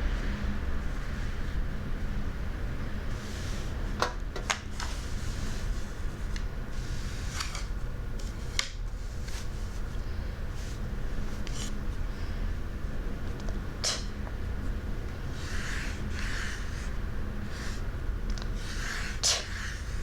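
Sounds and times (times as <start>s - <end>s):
steady low hum: 0.0s - 20.0s
sandpaper rubbing: 15.4s - 17.8s, 18.5s - 20.0s.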